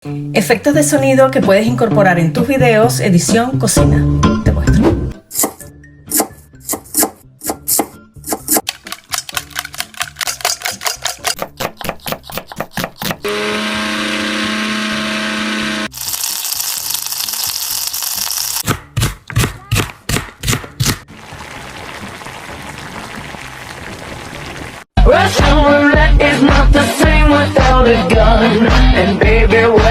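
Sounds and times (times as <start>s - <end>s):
knife chopping on cutting board: 5.3s - 8.7s, 11.0s - 13.2s, 18.6s - 21.0s
blender motor humming: 13.2s - 18.6s.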